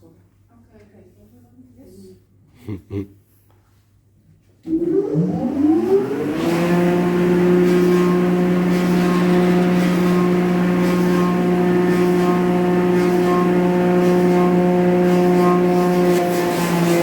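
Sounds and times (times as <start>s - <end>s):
wood-shaping machine running: 4.7s - 17.0s
rough wood shaving noise: 6.6s - 17.0s.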